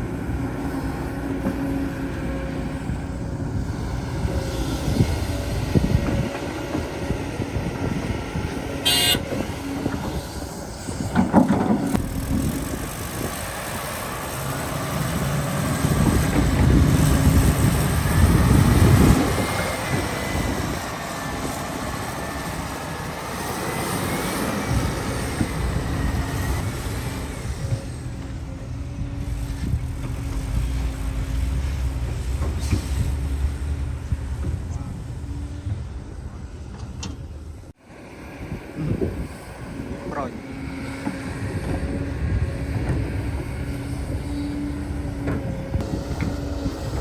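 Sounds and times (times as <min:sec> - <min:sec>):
excavator rumble: 0:00.0 - 0:47.0.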